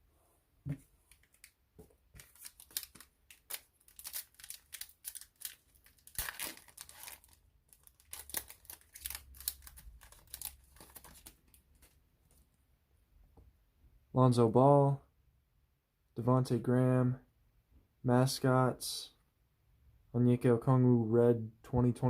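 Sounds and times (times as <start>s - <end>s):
cards being handled: 0.7s - 12.4s
wrapper tearing and crinkling: 2.2s - 12.0s.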